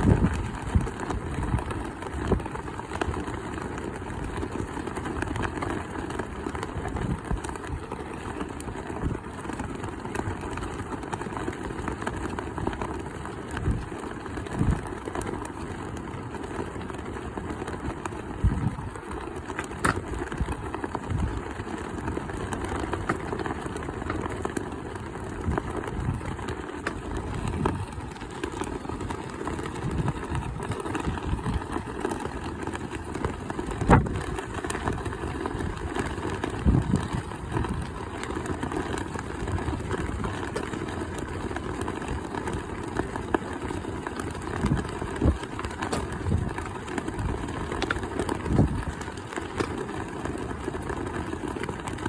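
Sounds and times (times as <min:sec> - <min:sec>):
wind buffeting microphone: 0:00.0 - 0:03.2, 0:13.5 - 0:14.9, 0:18.4 - 0:19.0, 0:19.8 - 0:21.6, 0:25.3 - 0:41.4, 0:44.2 - 0:49.9.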